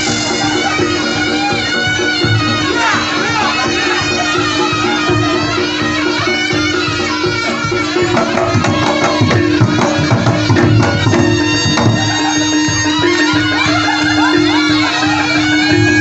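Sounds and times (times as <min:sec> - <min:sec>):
nasal reed pipe melody: 0:00.0 - 0:16.0
hand drum drumming: 0:05.4 - 0:16.0.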